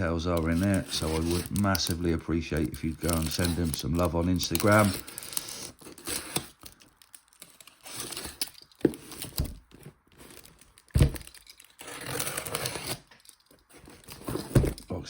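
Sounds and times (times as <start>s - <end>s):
cardboard box being opened: 0.4s - 2.0s, 2.7s - 6.6s, 13.7s - 15.0s.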